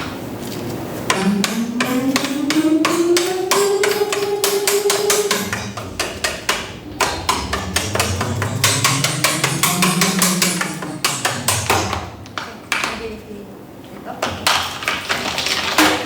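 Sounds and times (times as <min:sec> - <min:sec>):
low sliding tone: 0:01.0 - 0:12.6
rapid even tapping: 0:01.0 - 0:13.1.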